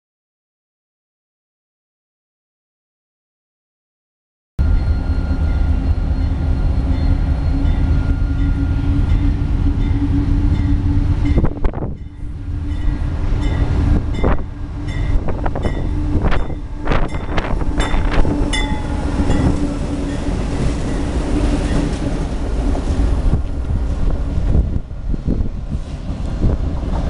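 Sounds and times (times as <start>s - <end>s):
freight train rumbling past: 4.6s - 27.0s
wheels clanking on track: 5.5s - 27.0s.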